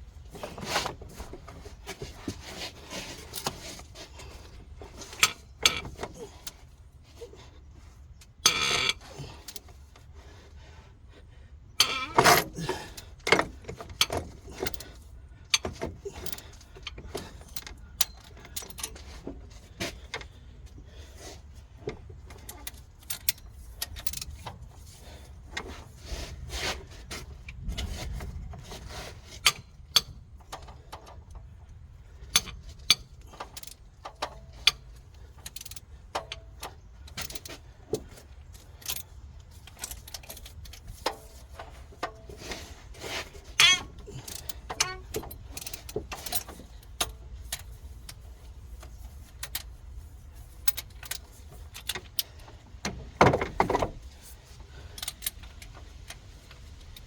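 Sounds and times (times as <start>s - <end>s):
metal parts clattering: 39.6s - 47.7s
metallic clinks of hand tools: 43.6s - 46.6s.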